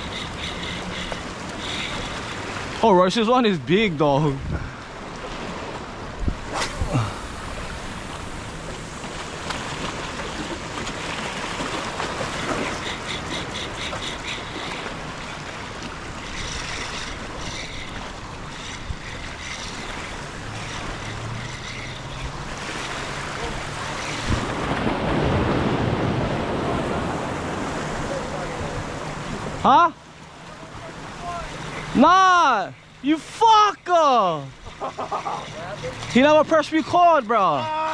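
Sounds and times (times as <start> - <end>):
wind buffeting microphone: 0.0 - 2.8, 6.1 - 29.5
ocean surf washing: 0.0 - 37.9.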